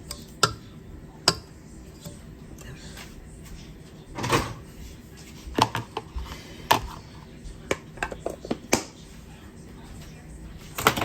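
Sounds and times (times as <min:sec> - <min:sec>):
cookware knocking and clinking: 0:05.6 - 0:06.9, 0:07.7 - 0:08.9.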